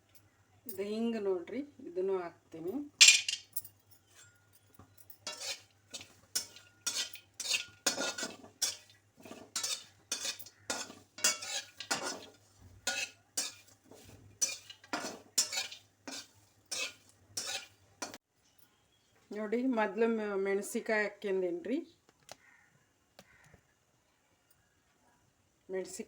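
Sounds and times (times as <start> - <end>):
metal spoon scraping metal cookware: 5.2 - 18.2.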